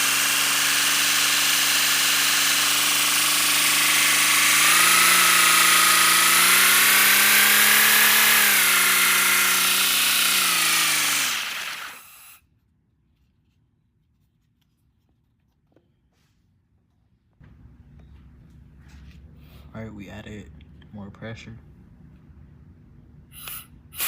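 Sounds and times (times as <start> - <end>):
compressed air hissing: 23.3 - 24.0.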